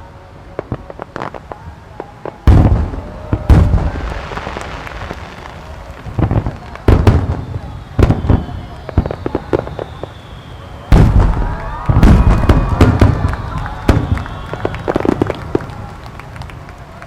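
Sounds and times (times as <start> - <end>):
firework cracks and pops: 0.6 - 17.0
firework shells booming: 2.3 - 15.8.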